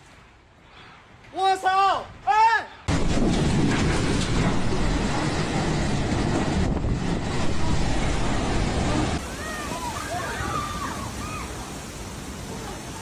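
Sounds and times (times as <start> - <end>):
wind and rain rushing: 2.0 - 13.0
wind buffeting microphone: 2.9 - 13.0.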